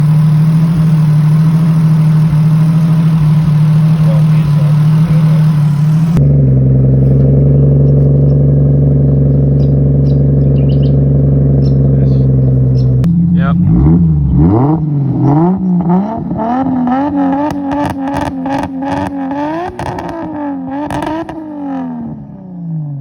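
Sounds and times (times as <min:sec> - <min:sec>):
engine hiss: 0:00.0 - 0:14.3
car engine idling: 0:00.0 - 0:22.4.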